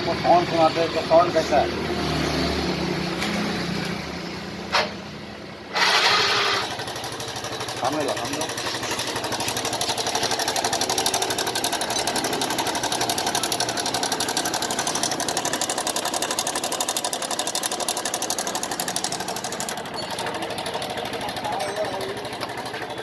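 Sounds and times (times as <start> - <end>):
motorcycle engine running: 0.0 - 23.0
fast ticking inside engine: 6.6 - 23.0.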